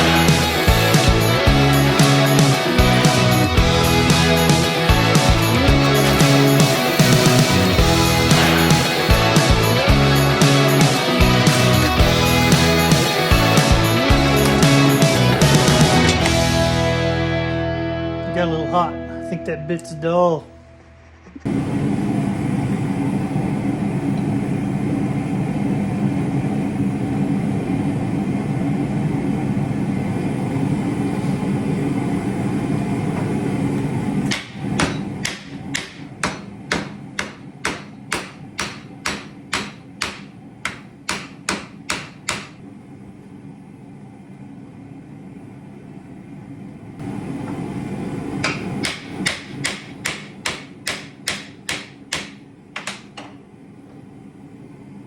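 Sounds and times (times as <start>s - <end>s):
loud rushing noise: 0.0s - 17.5s
hammer striking metal on anvil: 34.3s - 42.6s, 48.4s - 53.1s.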